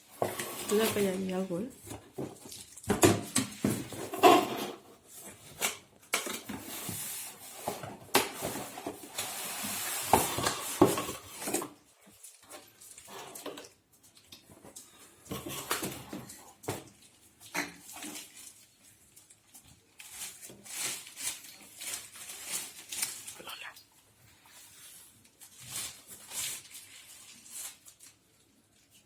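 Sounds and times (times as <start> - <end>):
plastic parts knocking and clattering: 0.1 - 18.6
packaging rustling: 5.0 - 23.6, 24.3 - 29.0.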